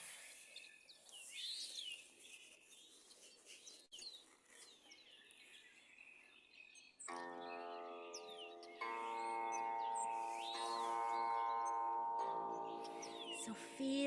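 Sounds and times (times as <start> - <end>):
birds chirping: 0.0 - 14.0
sustained ringing musical tone: 7.1 - 14.0.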